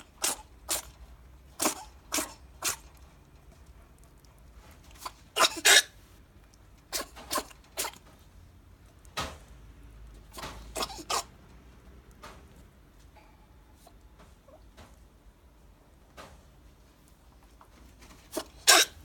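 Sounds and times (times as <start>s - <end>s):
rabbit sneezing: 0.0s - 3.0s, 4.9s - 6.0s, 6.8s - 8.1s, 10.3s - 11.4s, 18.0s - 19.0s.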